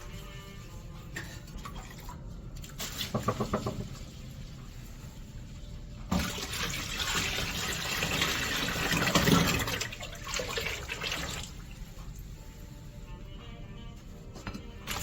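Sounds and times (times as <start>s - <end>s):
water running from a tap: 1.2s - 5.2s, 6.0s - 12.4s.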